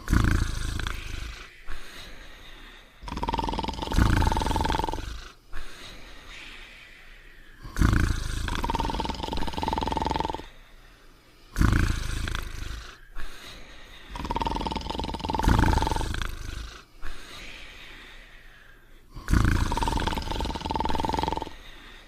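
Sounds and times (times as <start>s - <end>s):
cartoon dog snoring with whistle: 0.0s - 1.8s, 3.0s - 5.4s, 7.6s - 10.5s, 11.5s - 13.0s, 14.1s - 16.8s, 19.2s - 21.6s.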